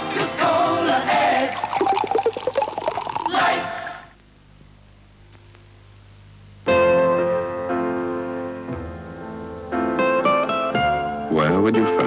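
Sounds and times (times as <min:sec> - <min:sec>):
faint hum: 0:00.5 - 0:11.7
piano chords ringing: 0:06.7 - 0:12.0.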